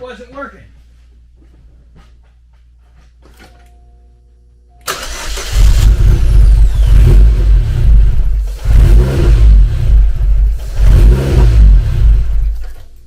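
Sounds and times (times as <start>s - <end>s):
car engine cranking and revving: 4.9s - 13.0s.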